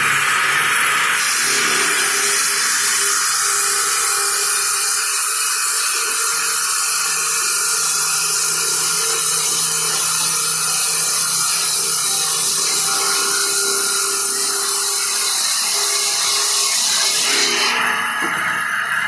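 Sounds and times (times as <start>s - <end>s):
sawmill blade whining: 0.0s - 19.0s.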